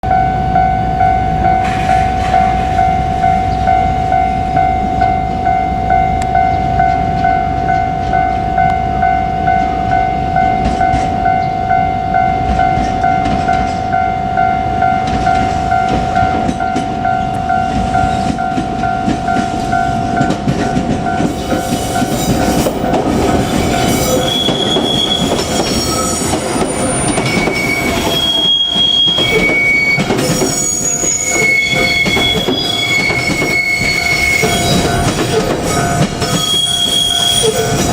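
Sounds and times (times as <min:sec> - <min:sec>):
electric train rumbling past: 0:00.0 - 0:37.9
level crossing warning bell: 0:00.0 - 0:37.9
train wheels squealing: 0:01.5 - 0:03.8, 0:21.3 - 0:37.9.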